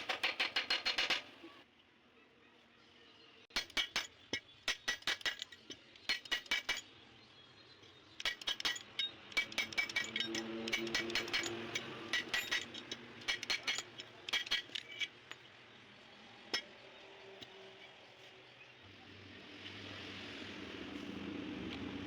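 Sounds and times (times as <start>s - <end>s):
small metal parts clinking: 4.7s - 6.9s, 8.2s - 15.5s.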